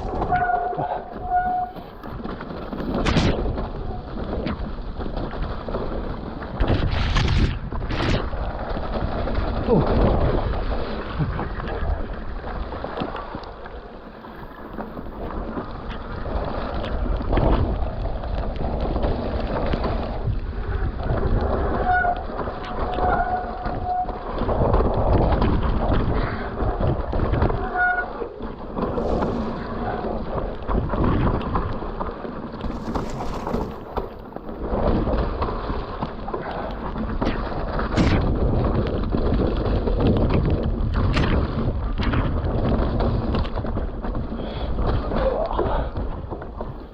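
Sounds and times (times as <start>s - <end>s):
wind rushing over microphone: 0.0s - 13.6s, 14.4s - 46.9s
rain: 0.0s - 46.9s
tyres rolling over rock and dirt: 0.0s - 46.9s
short squeaks: 0.1s - 1.9s
bike knocks and rattles: 14.5s - 46.9s.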